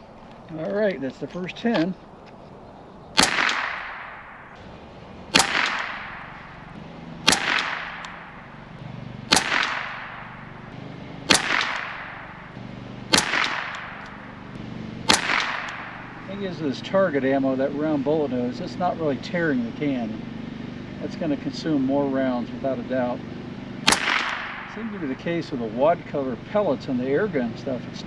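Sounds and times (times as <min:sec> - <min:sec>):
rifle shots with echo: 0:03.1 - 0:18.0, 0:23.4 - 0:26.5.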